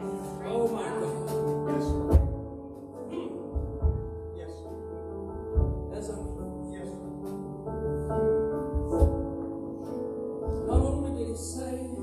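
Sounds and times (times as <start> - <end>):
soft background music chords: 0.0 - 12.0
deep low hits: 3.5 - 6.6, 8.6 - 9.5.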